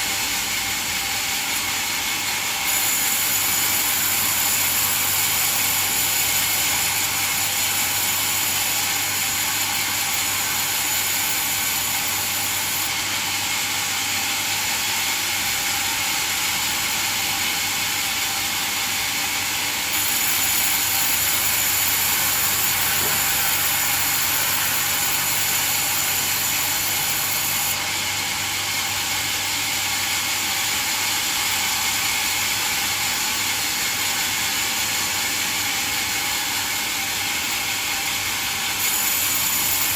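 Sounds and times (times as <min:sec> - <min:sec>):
bandsaw cutting wood: 0:00.0 - 0:39.9.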